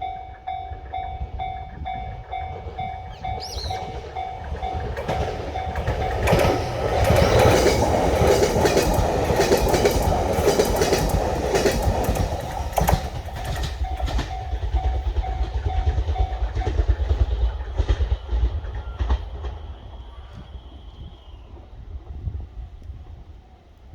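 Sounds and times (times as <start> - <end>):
crossing warning bell ringing: 0.0 - 17.2
train wheels clacking over rails: 0.0 - 20.7.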